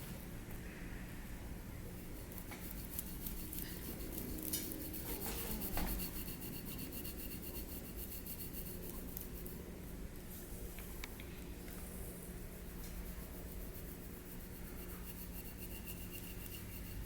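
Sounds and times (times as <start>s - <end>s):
metal instrument scraping skin: 2.2s - 9.3s.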